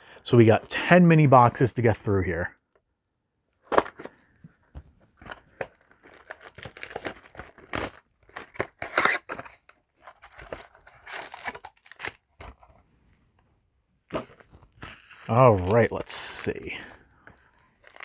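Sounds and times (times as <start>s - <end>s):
plastic packaging being torn and crinkled: 5.2s - 12.8s, 14.1s - 17.0s, 17.6s - 18.0s.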